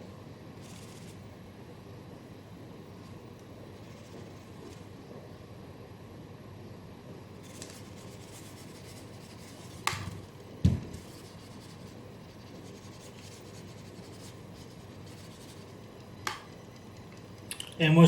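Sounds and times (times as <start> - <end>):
rubbing and scratching: 3.8 - 4.9, 7.4 - 10.3, 11.0 - 15.9.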